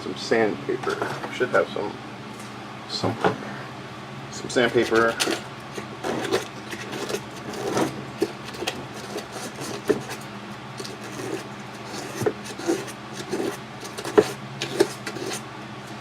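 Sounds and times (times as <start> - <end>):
sandpaper scratching plastic: 4.6 - 10.2, 10.8 - 15.5.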